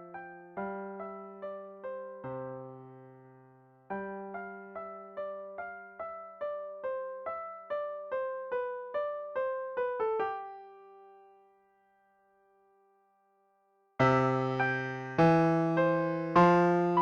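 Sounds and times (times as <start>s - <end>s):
electric piano melody: 0.0s - 11.5s, 14.0s - 17.0s.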